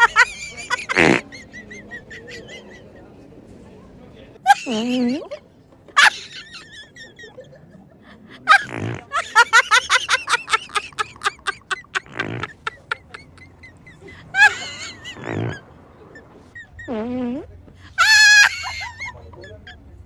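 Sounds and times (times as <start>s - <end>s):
high-pitched laughter and yelps: 0.0s - 3.0s, 4.4s - 5.4s, 6.0s - 20.0s
fart noises: 0.8s - 1.3s, 8.6s - 9.1s, 12.0s - 12.7s, 15.1s - 15.7s, 16.8s - 17.6s.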